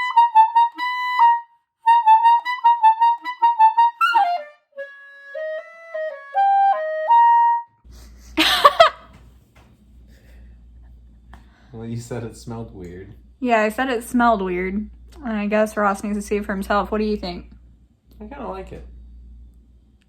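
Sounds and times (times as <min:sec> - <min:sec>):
clarinet melody: 0:00.0 - 0:07.8
low hum: 0:07.9 - 0:20.0.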